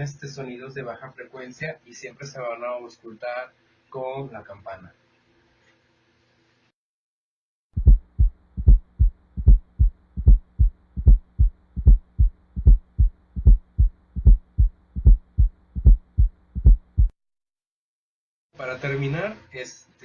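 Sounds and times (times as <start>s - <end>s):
faint steady hum: 7.8s - 17.1s
heartbeat thuds: 7.8s - 17.2s.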